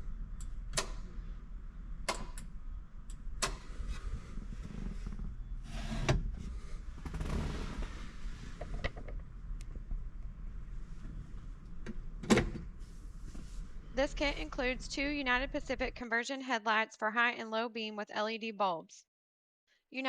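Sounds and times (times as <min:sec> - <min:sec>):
steady low rumble: 0:00.0 - 0:16.1
dimmer switch clicking: 0:00.4 - 0:01.1, 0:02.1 - 0:02.5.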